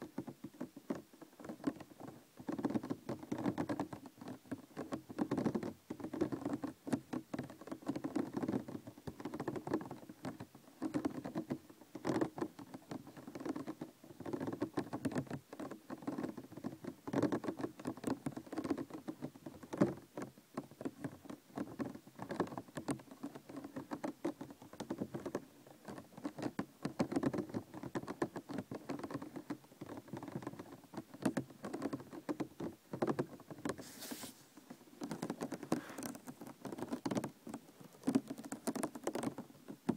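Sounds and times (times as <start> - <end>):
plastic container taps and scratches: 26.2 - 39.9.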